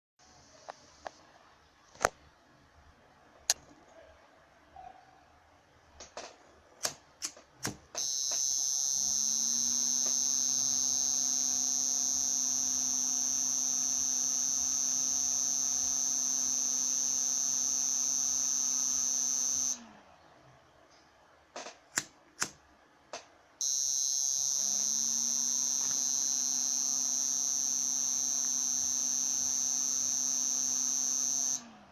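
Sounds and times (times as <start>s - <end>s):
piezo buzzer high-pitched tone: 8.0s - 19.8s, 23.6s - 31.8s.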